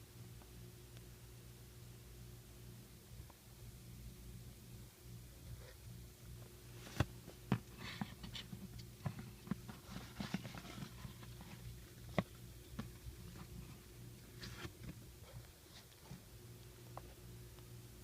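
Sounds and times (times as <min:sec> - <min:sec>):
low steady hum: 0:00.0 - 0:18.0.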